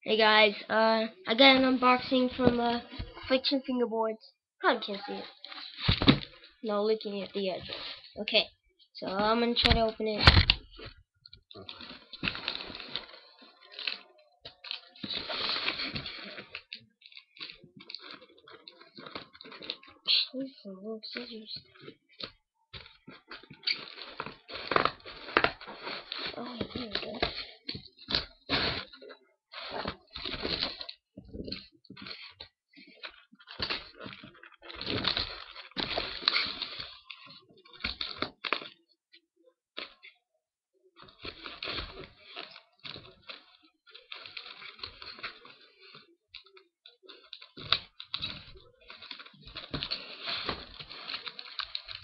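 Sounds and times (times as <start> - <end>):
packaging scraping and crinkling: 11.6 - 20.0, 21.1 - 38.8, 41.0 - 52.0.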